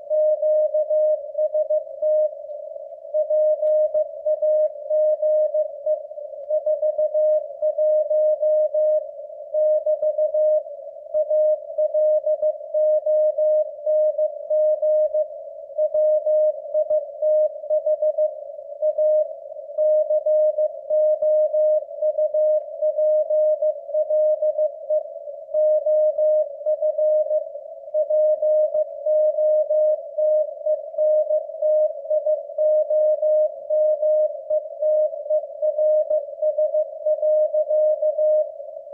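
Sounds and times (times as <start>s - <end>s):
morse code beeps: 25.6s - 27.4s, 28.0s - 38.5s.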